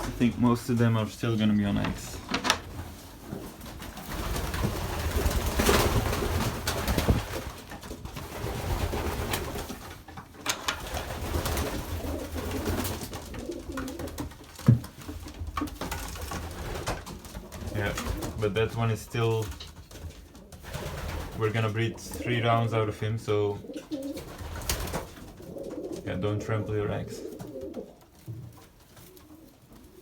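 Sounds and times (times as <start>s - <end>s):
pigeons cooing: 10.9s - 14.6s, 16.2s - 30.0s.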